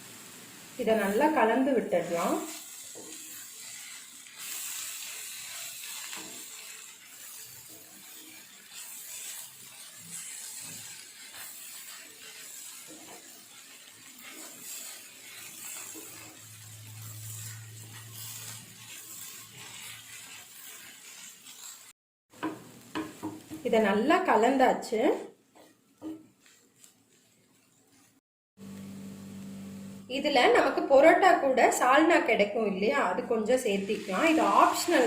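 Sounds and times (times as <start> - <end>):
food sizzling in a pan: 0.0 - 35.0
spatula scraping a pan: 2.0 - 21.9, 25.2 - 28.2, 33.9 - 35.0.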